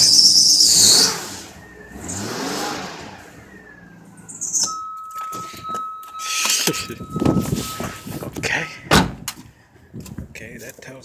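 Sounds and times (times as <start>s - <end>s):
car engine revving: 0.0s - 9.2s.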